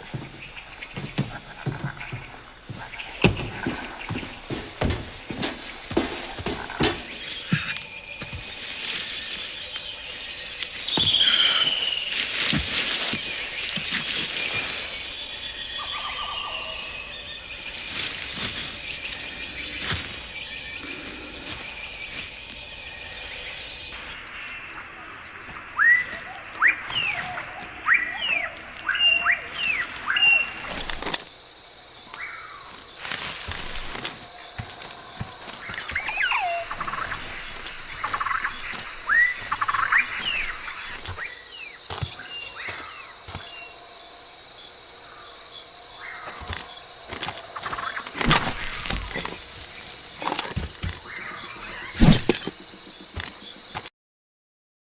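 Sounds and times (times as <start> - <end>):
bird calls: 0.0 - 53.9
high insect drone: 0.0 - 53.9
quick sweeping whistles: 25.8 - 27.3.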